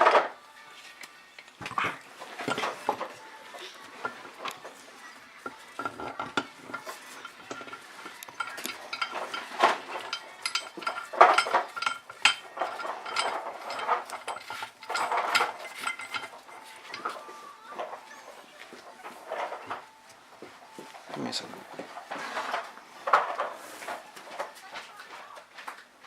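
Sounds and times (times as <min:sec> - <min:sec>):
metal tools clinking on engine: 0:02.4 - 0:03.1, 0:05.4 - 0:17.2.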